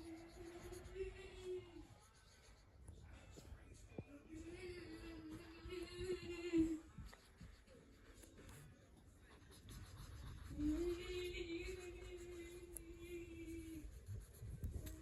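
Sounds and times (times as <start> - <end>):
marker tapping and scratching paper: 9.3 - 15.0.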